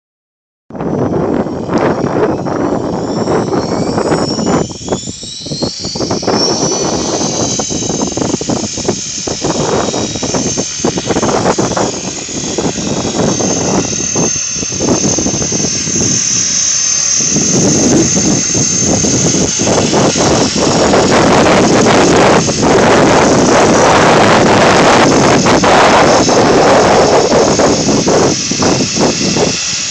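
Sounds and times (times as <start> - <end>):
wind buffeting microphone: 0.7 - 29.9
electric model aircraft motors whining: 0.8 - 29.9.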